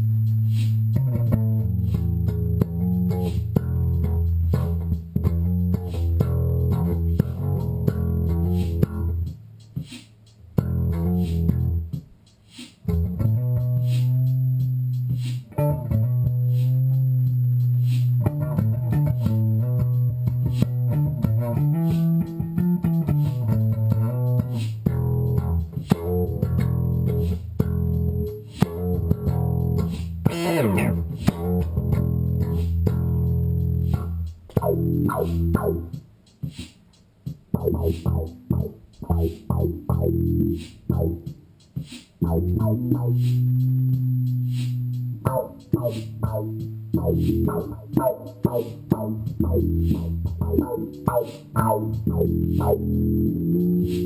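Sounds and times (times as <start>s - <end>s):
electric bass guitar funk lines: 0.0s - 12.1s, 12.8s - 36.6s, 37.4s - 54.0s.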